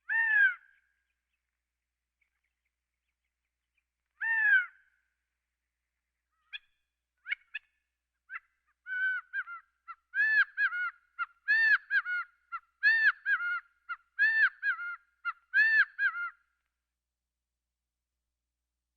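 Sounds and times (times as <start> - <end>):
quail calling: 0.1 - 0.7, 4.2 - 4.8, 8.3 - 16.4.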